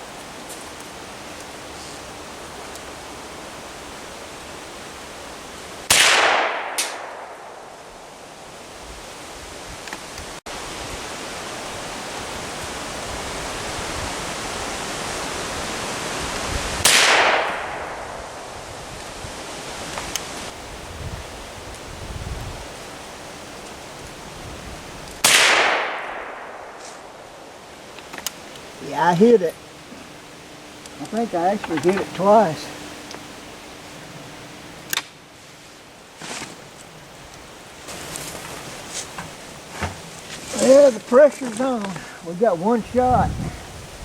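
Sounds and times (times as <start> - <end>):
steady wind-like noise: 0.0 - 44.0
small sharp crack: 5.9 - 7.2
rifle shots ringing out: 5.9 - 7.8, 16.8 - 18.4, 25.2 - 27.2.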